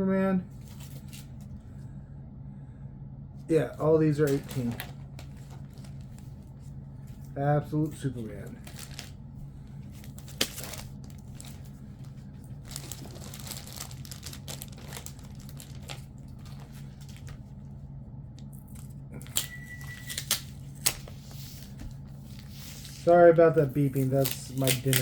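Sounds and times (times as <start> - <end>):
steady low hum: 0.0 - 25.0
plastic bags crinkling: 4.0 - 7.3, 7.9 - 17.5, 18.6 - 25.0
kitchen appliance beep: 19.3 - 20.3.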